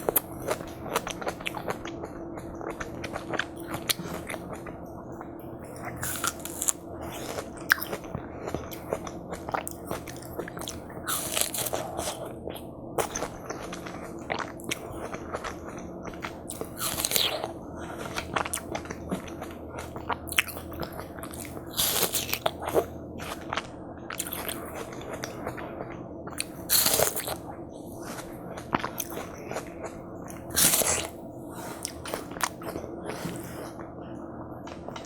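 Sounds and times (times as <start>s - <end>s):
crisp bites and wet chewing: 5.6s - 25.7s, 26.3s - 27.4s, 28.0s - 29.7s, 30.3s - 31.2s, 31.8s - 33.4s.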